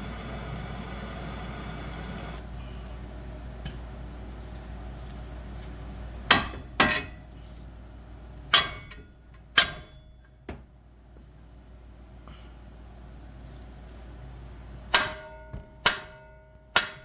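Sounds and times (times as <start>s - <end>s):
hammer striking metal: 8.5s - 9.0s, 14.9s - 17.0s.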